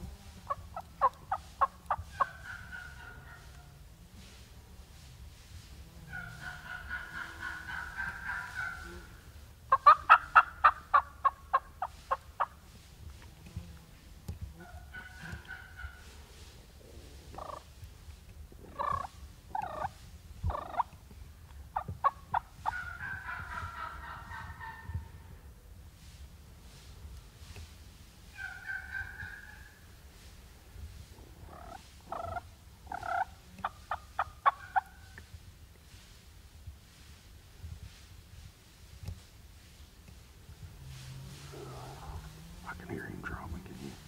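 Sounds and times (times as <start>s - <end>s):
turkey gobbling: 0.4s - 3.7s, 6.1s - 12.6s, 14.6s - 16.2s, 17.3s - 17.7s, 18.7s - 21.0s, 21.8s - 25.3s, 28.3s - 29.8s, 31.4s - 35.2s
turkey yelps: 0.5s - 3.7s, 6.1s - 9.0s, 9.7s - 12.5s, 14.6s - 16.1s, 20.5s - 21.0s, 21.8s - 25.2s, 28.3s - 29.8s, 31.5s - 35.2s.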